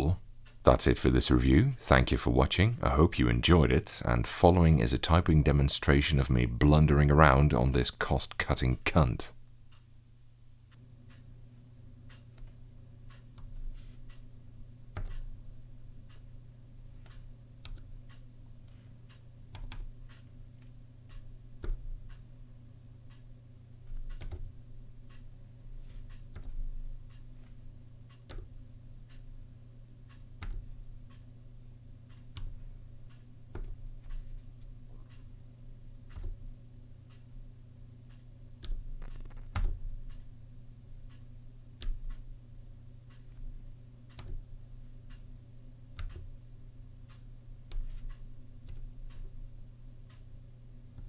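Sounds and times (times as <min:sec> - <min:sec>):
steady low hum: 0:00.0 - 0:51.0
keyboard keystrokes clicking: 0:24.1 - 0:24.5, 0:36.1 - 0:36.4, 0:38.6 - 0:39.8, 0:44.1 - 0:44.4.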